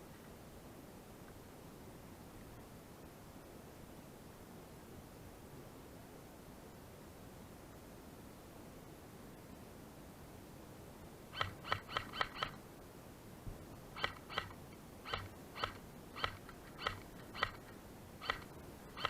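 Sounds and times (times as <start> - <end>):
bird high-pitched calls: 11.3 - 12.6.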